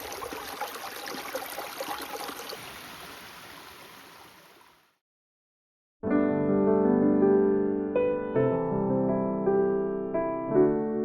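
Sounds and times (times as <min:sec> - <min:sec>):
river water trickling over stones: 0:00.0 - 0:04.9.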